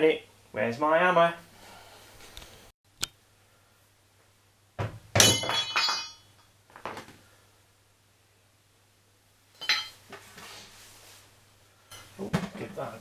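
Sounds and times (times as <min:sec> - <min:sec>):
metallic clatter of tools: 0:09.6 - 0:10.0.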